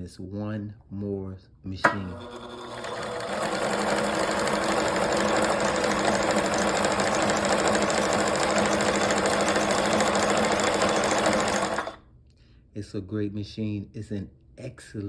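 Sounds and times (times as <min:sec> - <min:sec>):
sewing machine whirring: 0:01.9 - 0:12.0.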